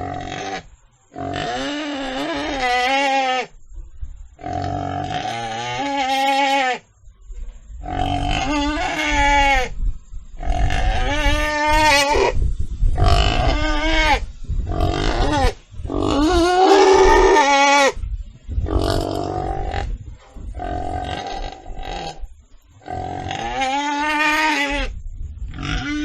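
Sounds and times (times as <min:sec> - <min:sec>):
pig squealing: 0:00.0 - 0:03.5, 0:04.5 - 0:06.8, 0:07.9 - 0:09.7, 0:13.0 - 0:18.0, 0:23.1 - 0:24.9, 0:25.6 - 0:26.0.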